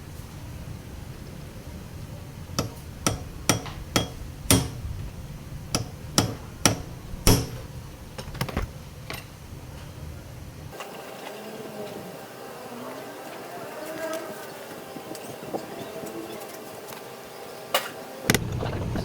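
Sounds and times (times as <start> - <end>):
low steady hum: 0.0 - 13.7
sharp knocks: 2.6 - 8.7.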